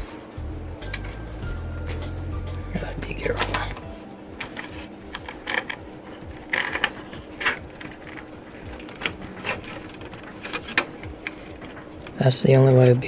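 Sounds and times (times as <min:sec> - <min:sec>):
faint steady hum: 0:00.0 - 0:13.0
parts clicking inside computer case: 0:03.2 - 0:13.0.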